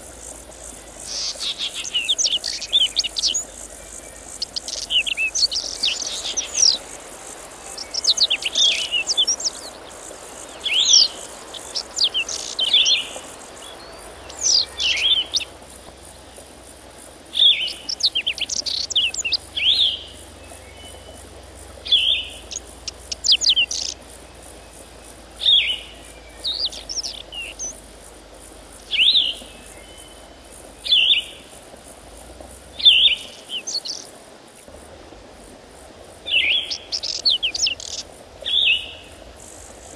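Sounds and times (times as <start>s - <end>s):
songbird singing: 0.0s - 34.7s, 35.4s - 39.9s
faint steady high hiss: 0.0s - 39.9s.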